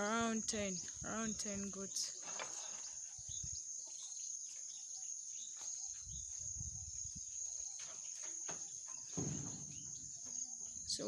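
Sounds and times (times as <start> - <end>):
insect chorus chirring: 0.0 - 11.0.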